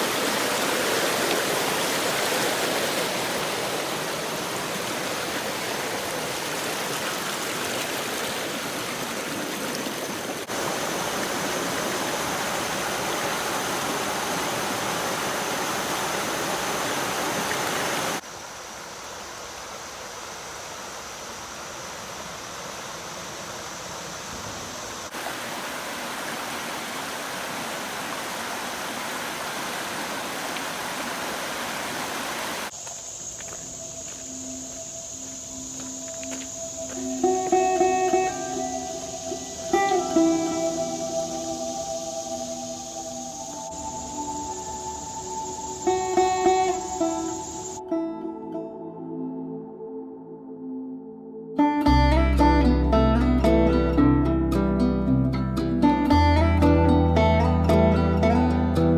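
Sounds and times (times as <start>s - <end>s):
creek water rushing over rocks: 0.0s - 32.8s
acoustic guitar music: 35.2s - 42.4s, 45.6s - 49.4s, 51.6s - 58.9s.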